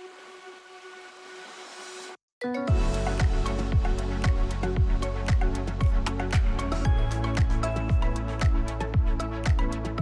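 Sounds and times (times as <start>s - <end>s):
electronic music with kick drum: 2.7s - 10.0s.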